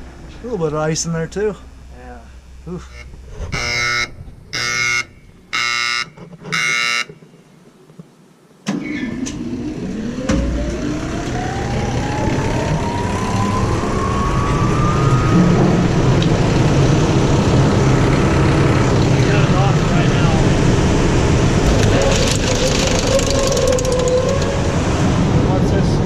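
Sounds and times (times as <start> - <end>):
warning buzzer beep: 2.9 - 7.1
fan motor whine spinning up: 9.0 - 25.9.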